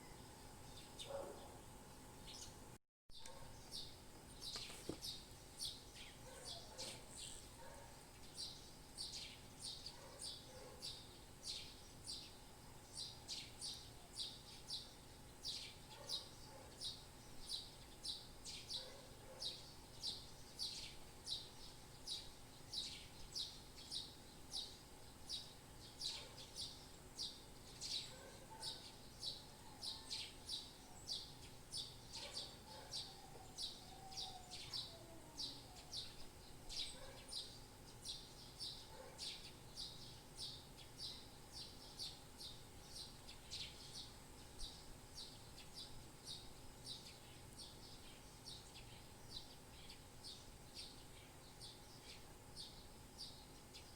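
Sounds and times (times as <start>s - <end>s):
birds chirping: 0.0s - 2.6s, 3.2s - 53.9s
faint background hum: 0.0s - 53.9s.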